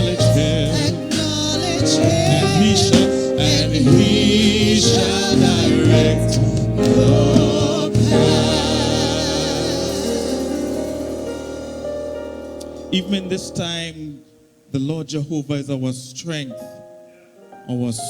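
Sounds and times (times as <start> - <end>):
band playing: 0.0 - 14.1
gospel singers with vibrato: 0.0 - 14.2.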